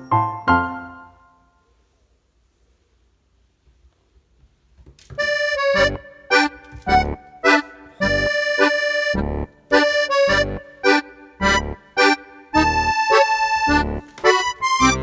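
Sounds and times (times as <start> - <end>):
bouncy accordion music: 5.2 - 15.0.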